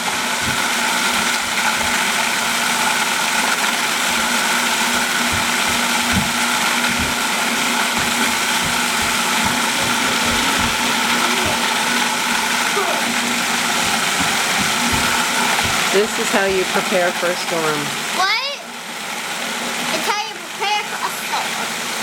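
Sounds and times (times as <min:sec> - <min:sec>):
food processor motor hum: 0:00.0 - 0:22.0
batter knocking in bowl: 0:04.0 - 0:12.6, 0:13.2 - 0:17.0.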